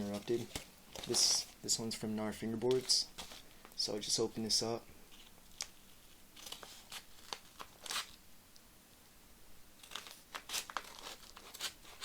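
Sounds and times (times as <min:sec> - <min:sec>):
packaging tearing and crinkling: 0:00.0 - 0:01.5, 0:05.2 - 0:08.2, 0:09.8 - 0:12.0.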